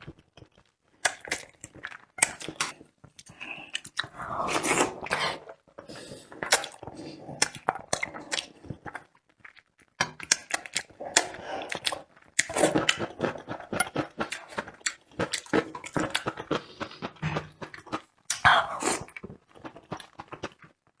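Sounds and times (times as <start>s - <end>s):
chewing: 0.1s - 20.8s
slurping food: 2.4s - 9.0s
lip smacks: 6.4s - 9.0s.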